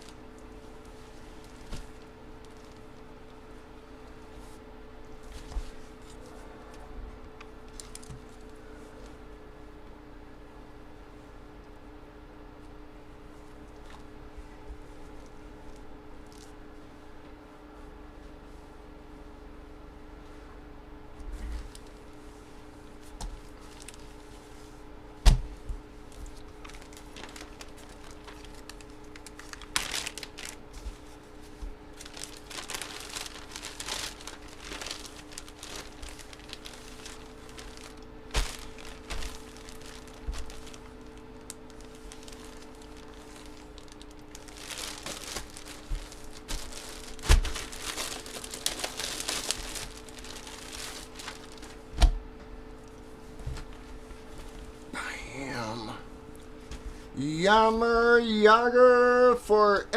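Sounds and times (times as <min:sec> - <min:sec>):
wrappers crinkling and tearing: 0:00.0 - 0:03.2, 0:07.6 - 0:08.6, 0:23.0 - 0:24.3, 0:26.0 - 0:51.9.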